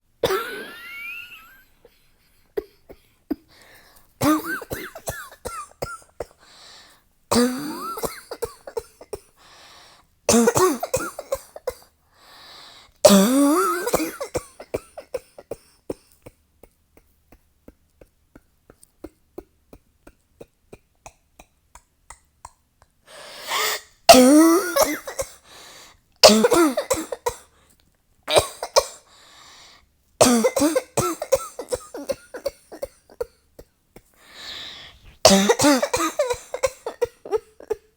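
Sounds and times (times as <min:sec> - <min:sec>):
person coughing: 0:00.2 - 0:01.6, 0:02.3 - 0:06.4, 0:07.3 - 0:09.4, 0:10.3 - 0:11.8, 0:13.0 - 0:16.4, 0:23.2 - 0:25.4, 0:26.2 - 0:27.5, 0:28.3 - 0:29.1, 0:30.2 - 0:37.9.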